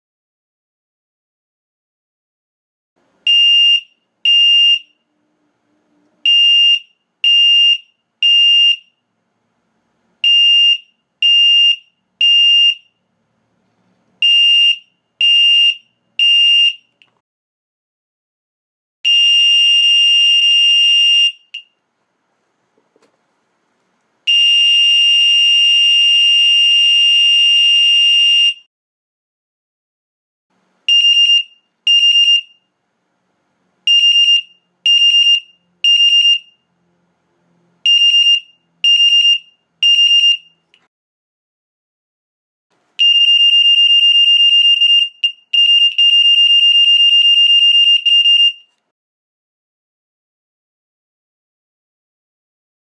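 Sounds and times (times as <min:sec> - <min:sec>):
fire alarm horn: 0:03.3 - 0:09.0, 0:10.2 - 0:13.0, 0:14.2 - 0:17.0, 0:19.1 - 0:21.7, 0:24.3 - 0:28.7, 0:30.9 - 0:32.7, 0:33.9 - 0:36.7, 0:37.8 - 0:40.7, 0:43.0 - 0:48.8.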